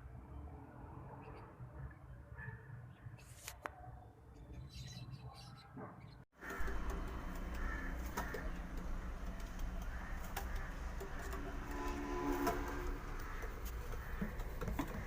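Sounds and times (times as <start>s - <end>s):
birds chirping: 4.3s - 15.0s
steady low hum: 6.4s - 15.0s.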